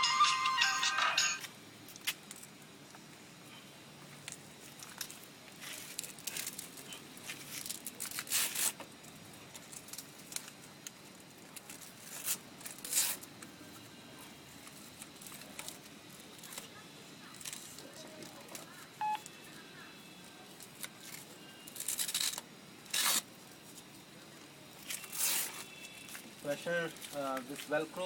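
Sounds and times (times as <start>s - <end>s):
flute music: 0.0s - 1.4s
velcro straps ripping: 5.0s - 8.9s, 11.6s - 13.3s, 20.7s - 23.4s, 24.8s - 26.2s.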